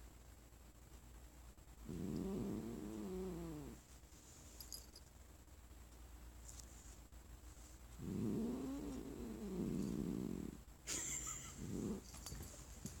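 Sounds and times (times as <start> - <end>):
cat growling: 1.8 - 3.8, 8.0 - 10.6, 11.5 - 12.1.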